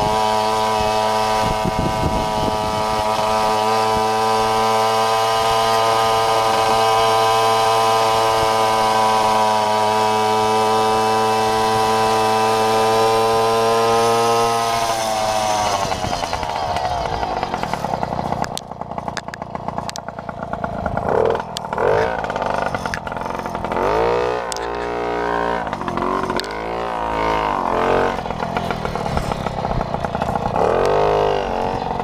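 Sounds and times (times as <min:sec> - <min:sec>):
moped engine revving: 0:00.0 - 0:32.0.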